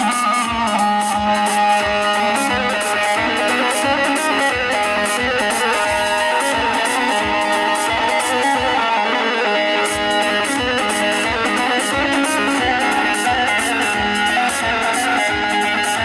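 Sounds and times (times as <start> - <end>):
plucked-string melody over a beat: 0.0 - 16.0.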